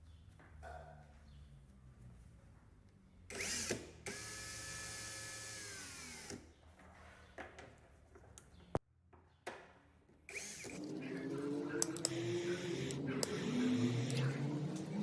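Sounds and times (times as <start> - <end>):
electric motor whirring down: 3.3 - 6.4, 10.3 - 15.0.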